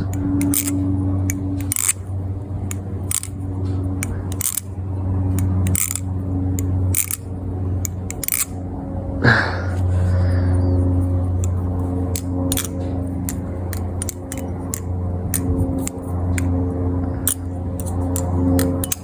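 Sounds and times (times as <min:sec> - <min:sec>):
steady low hum: 0:00.0 - 0:19.0
metallic knife clicks: 0:00.1 - 0:02.0, 0:02.7 - 0:03.4, 0:04.0 - 0:04.7, 0:05.3 - 0:08.6, 0:11.3 - 0:16.5, 0:17.2 - 0:19.0.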